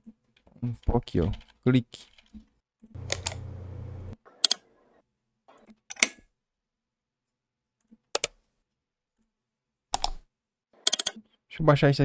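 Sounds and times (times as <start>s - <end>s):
computer mouse clicks: 3.0s - 3.6s, 8.2s - 8.4s, 10.0s - 10.2s, 10.9s - 11.2s.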